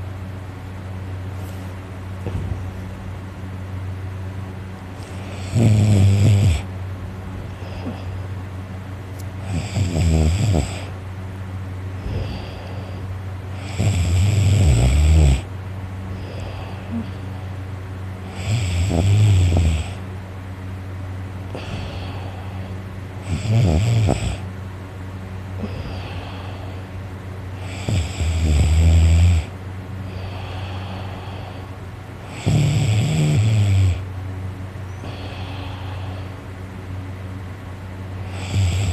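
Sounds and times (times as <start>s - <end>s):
steady low hum: 0.0s - 38.9s
man snoring heavily: 5.0s - 6.7s, 7.6s - 8.2s, 9.4s - 11.0s, 12.0s - 15.5s, 16.2s - 17.4s, 18.2s - 20.0s, 21.5s - 24.5s, 25.6s - 26.9s, 27.5s - 34.1s, 35.0s - 36.4s, 38.2s - 38.9s
quiet breathing: 7.4s - 8.4s, 12.0s - 14.0s, 16.0s - 17.6s, 21.5s - 24.5s, 25.5s - 28.1s, 30.0s - 32.6s, 34.9s - 36.7s.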